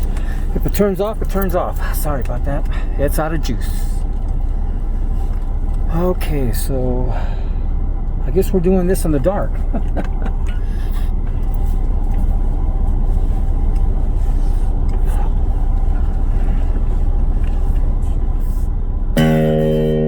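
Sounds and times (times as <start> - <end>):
guitar amp hum and buzz: 19.0 - 20.0
electric guitar chord ringing: 19.2 - 20.0.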